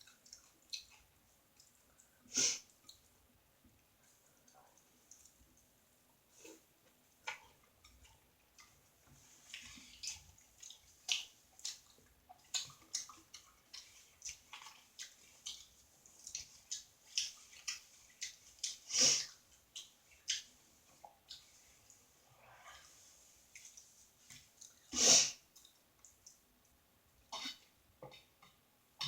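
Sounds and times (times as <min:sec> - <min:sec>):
wet chewing and mouth smacking: 0:00.0 - 0:02.1, 0:09.5 - 0:21.5.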